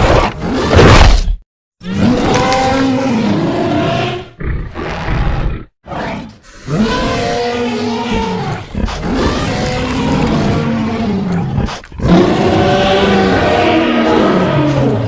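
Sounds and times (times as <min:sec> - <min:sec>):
dinosaur roar wavering in pitch: 0:06.7 - 0:15.0.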